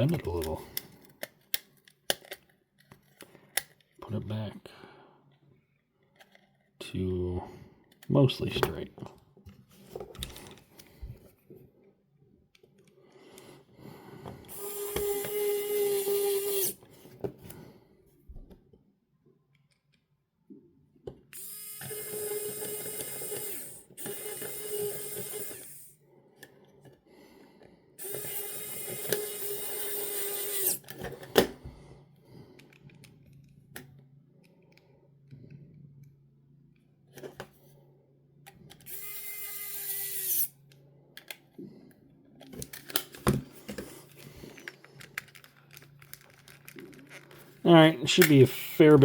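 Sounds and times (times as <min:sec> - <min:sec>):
small electric motor whirring: 0:14.5 - 0:16.8, 0:21.4 - 0:26.0, 0:28.0 - 0:30.9, 0:38.8 - 0:40.6.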